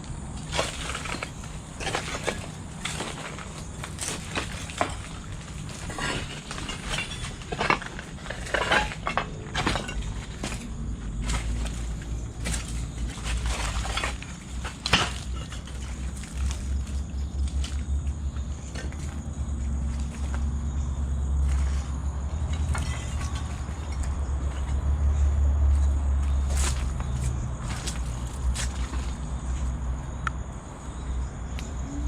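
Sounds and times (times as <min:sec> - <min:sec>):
footsteps crunching on gritty floor: 0:25.7 - 0:29.8.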